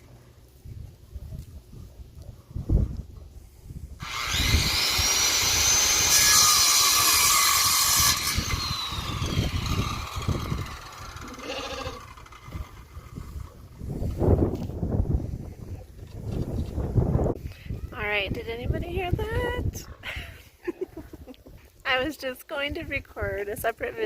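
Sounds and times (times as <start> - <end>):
power tool whining: 4.0 - 13.8.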